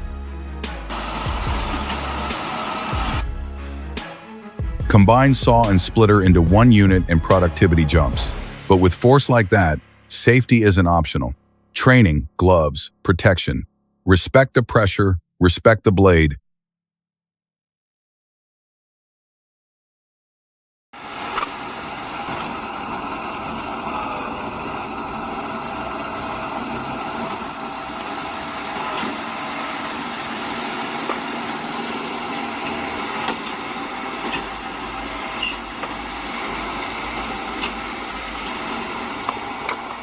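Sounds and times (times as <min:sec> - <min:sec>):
firewood machine running: 0:00.6 - 0:03.3, 0:21.0 - 0:40.0.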